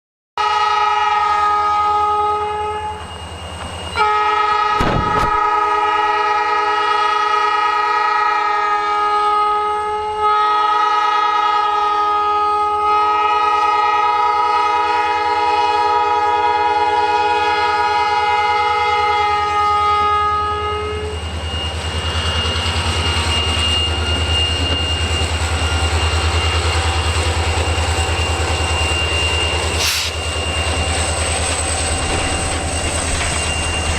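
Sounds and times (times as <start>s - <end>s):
locomotive air horn blasts: 0.4s - 3.1s, 4.0s - 21.2s, 29.8s - 30.2s
freight train rumbling by: 0.4s - 33.9s.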